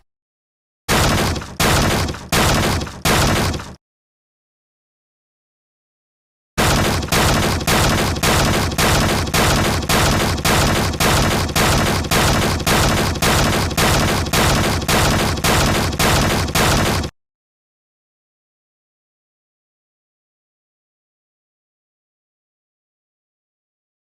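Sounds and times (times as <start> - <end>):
harsh repeated bangs: 0.9 - 3.8, 6.6 - 17.1.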